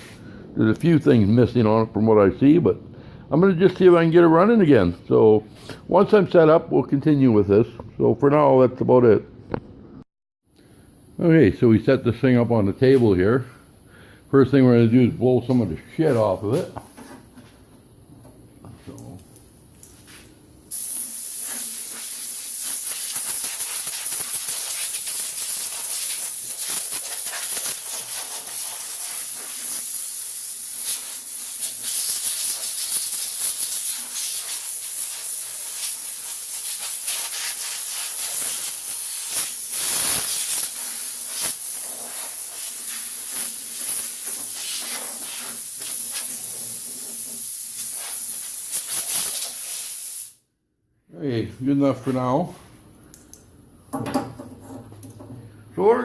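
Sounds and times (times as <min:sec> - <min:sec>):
compressed air hissing from blowgun: 0:20.7 - 0:50.4.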